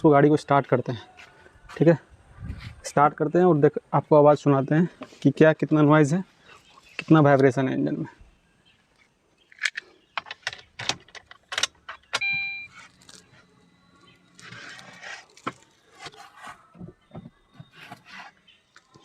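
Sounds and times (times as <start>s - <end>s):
sharp clicks and knocks: 9.5s - 12.4s
short electronic car beep: 12.2s - 12.8s.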